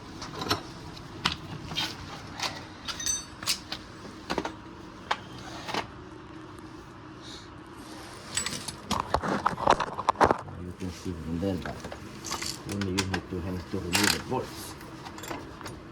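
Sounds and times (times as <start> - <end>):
steady low hum: 0.0 - 15.9
metallic tool clicks and clinks: 12.2 - 13.1, 13.9 - 14.2.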